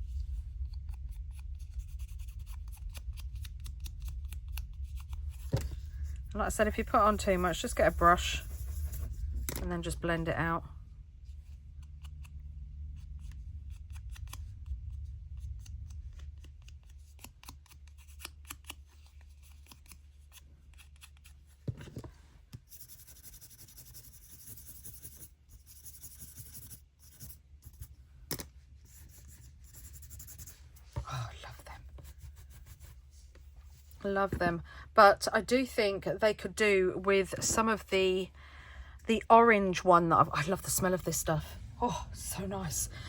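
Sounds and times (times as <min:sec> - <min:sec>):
low hum: 0:00.0 - 0:17.3, 0:35.8 - 0:43.0
brush scratching on card: 0:00.3 - 0:09.8, 0:22.6 - 0:27.9, 0:28.8 - 0:33.9.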